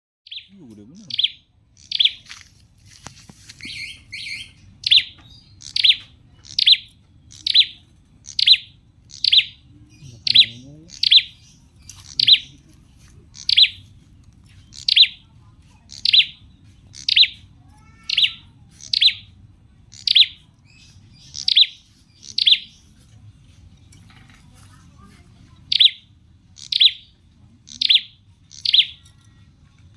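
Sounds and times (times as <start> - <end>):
bird chirping: 0.3 - 29.4.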